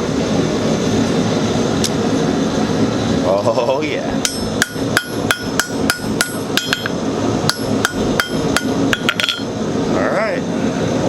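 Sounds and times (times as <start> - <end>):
hammer ringing on steel: 4.2 - 9.5.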